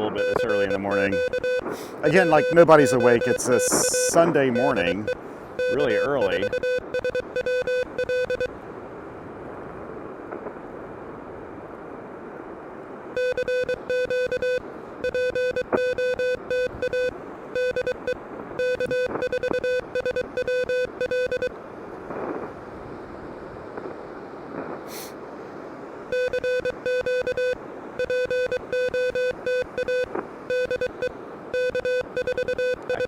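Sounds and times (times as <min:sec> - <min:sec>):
morse code tone: 0:00.0 - 0:08.5, 0:13.2 - 0:21.5, 0:26.1 - 0:33.0
receiver band hiss: 0:00.2 - 0:06.9.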